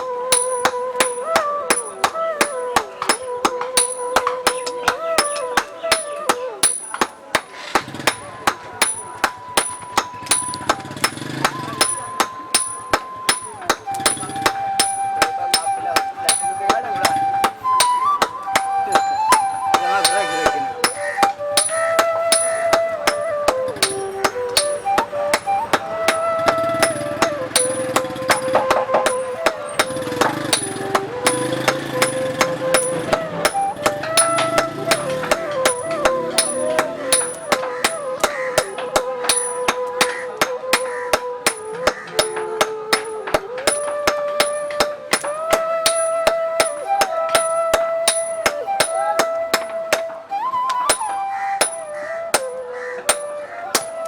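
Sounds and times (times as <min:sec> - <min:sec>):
music melody: 0:00.0 - 0:54.0
hammer on anvil: 0:06.6 - 0:15.7, 0:19.7 - 0:22.6, 0:26.5 - 0:46.1.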